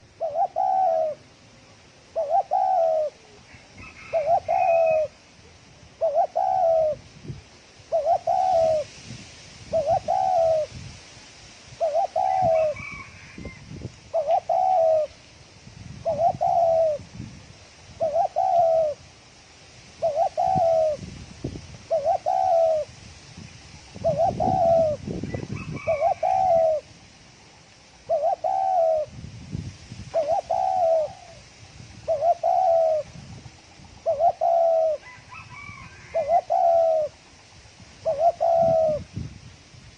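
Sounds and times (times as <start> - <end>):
dove cooing: 0.0 - 1.4, 2.0 - 5.2, 6.0 - 7.0, 7.9 - 8.9, 9.7 - 10.8, 11.8 - 15.2, 16.0 - 17.0, 18.0 - 19.0, 20.0 - 21.0, 21.9 - 22.9, 24.0 - 26.9, 28.0 - 29.2, 30.1 - 31.4, 32.0 - 33.2, 33.8 - 37.2, 38.0 - 39.1.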